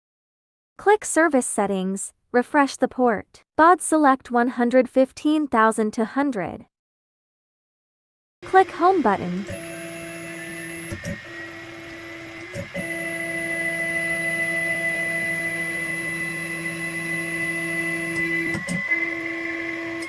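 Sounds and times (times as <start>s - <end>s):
stepper motors whining: 8.4s - 20.0s.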